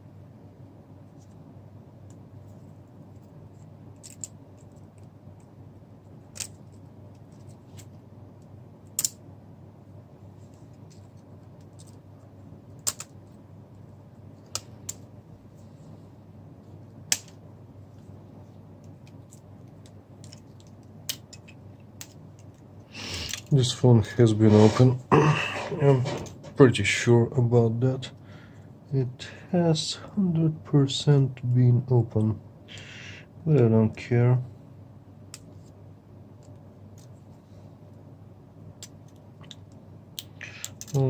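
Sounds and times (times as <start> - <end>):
low steady hum: 0.0 - 41.0.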